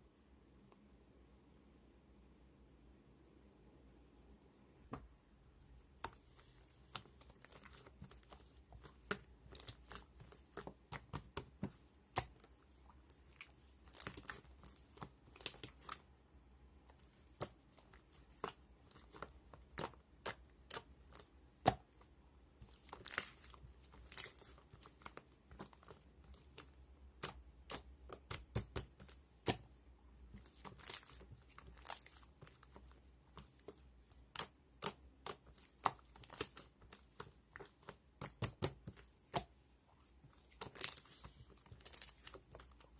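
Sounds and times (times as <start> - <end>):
slime crackling and tearing: 30.4 - 32.8, 40.4 - 42.9.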